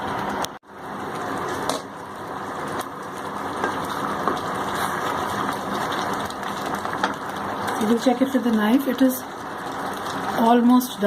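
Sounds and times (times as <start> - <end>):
chicken sizzling in a pan: 0.9 - 11.0
small crackles and pops: 2.6 - 10.4.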